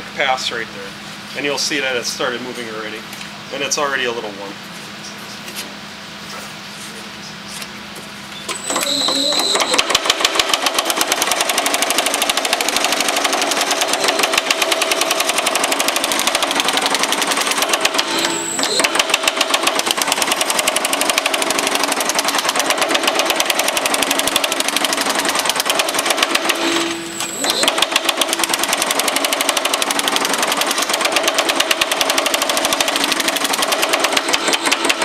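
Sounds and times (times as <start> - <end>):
power hammer pounding sheet metal: 9.8 - 35.0.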